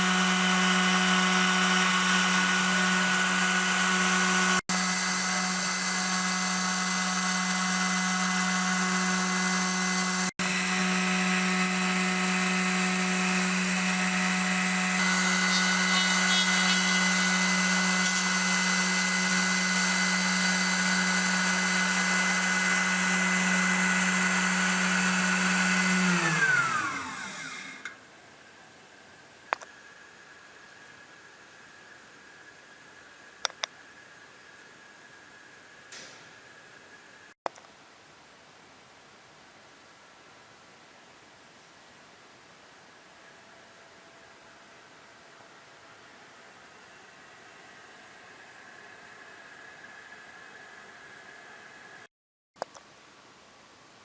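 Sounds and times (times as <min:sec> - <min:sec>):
spindle motor high-pitched whine: 0:00.0 - 0:28.0
single click: 0:33.4 - 0:33.7.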